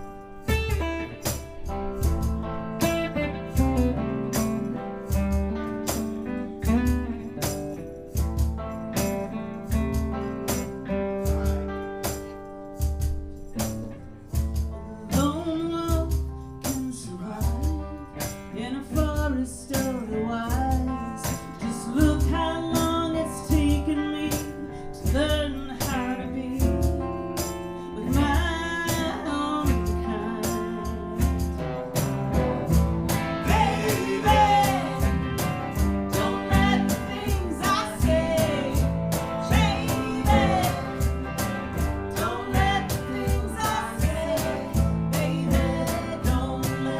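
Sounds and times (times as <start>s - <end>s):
tambourine-like percussion: 0.0s - 18.6s, 19.2s - 46.9s
strummed acoustic guitar: 0.0s - 46.9s
person singing: 33.4s - 35.5s, 36.1s - 41.3s, 42.1s - 46.9s.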